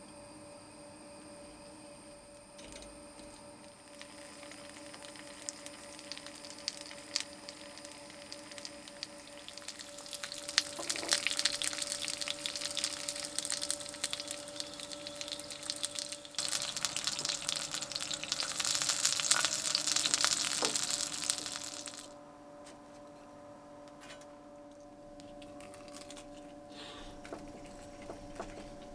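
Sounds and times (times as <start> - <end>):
faint steady hum: 0.0 - 28.9
crackling sizzling with small pops: 2.2 - 22.1.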